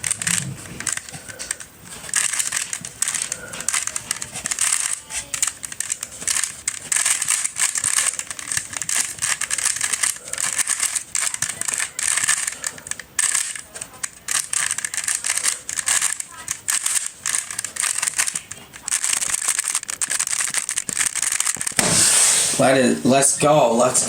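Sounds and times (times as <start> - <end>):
puzzle cube clicking: 0.0 - 22.1.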